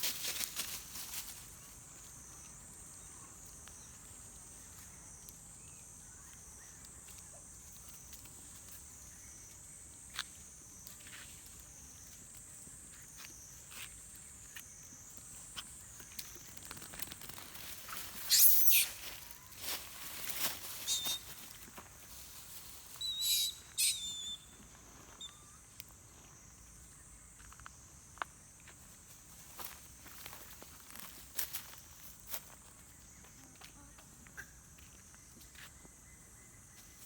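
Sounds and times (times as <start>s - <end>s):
shrill high calls: 18.2s - 19.3s, 20.8s - 21.3s, 22.9s - 24.5s.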